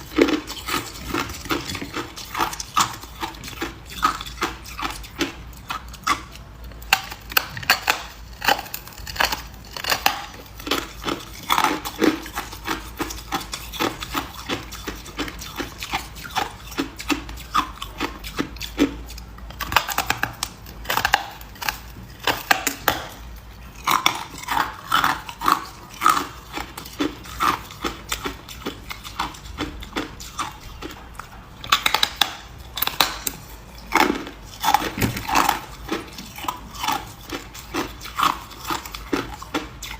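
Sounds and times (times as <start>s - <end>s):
ice being chewed and crunched: 0.0s - 39.9s.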